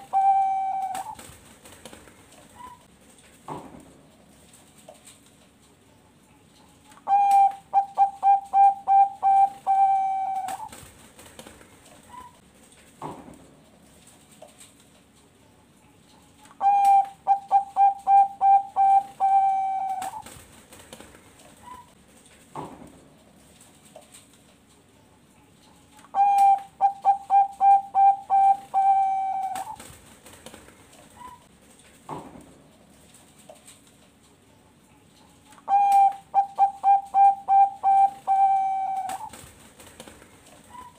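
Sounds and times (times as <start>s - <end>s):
dove cooing: 0.0s - 1.2s, 7.0s - 10.8s, 16.6s - 20.3s, 26.1s - 29.8s, 35.6s - 39.4s.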